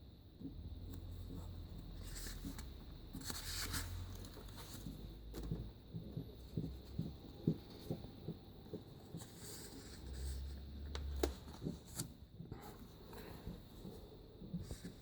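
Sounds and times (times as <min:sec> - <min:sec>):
magazine pages rustling: 0:02.0 - 0:05.5.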